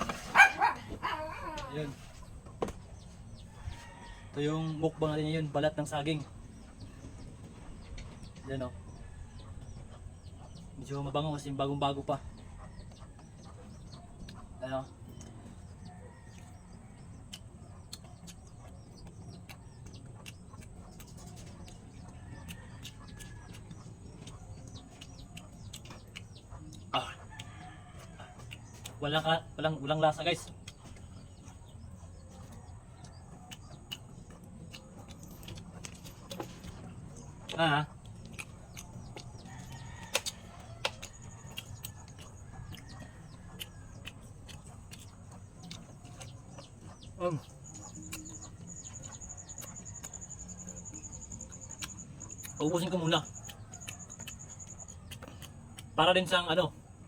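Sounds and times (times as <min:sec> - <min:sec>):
chickens clucking: 0:00.0 - 0:57.0
wet chewing clicks: 0:12.2 - 0:57.0.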